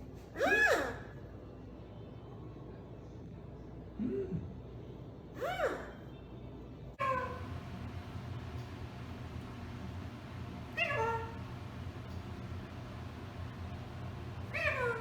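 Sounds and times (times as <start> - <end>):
parrot calling: 7.0 - 7.6, 10.7 - 11.6, 14.4 - 15.0.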